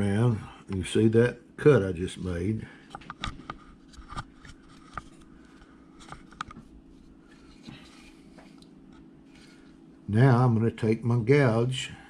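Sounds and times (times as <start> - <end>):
faint steady hum: 0.0 - 12.0
light clicks and scrapes: 2.8 - 9.8.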